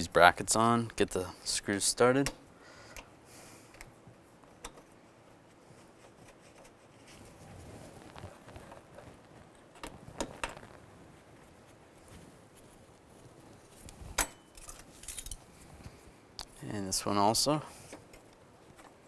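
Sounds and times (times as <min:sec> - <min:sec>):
metal bracket and screws clicking: 0:14.2 - 0:15.4.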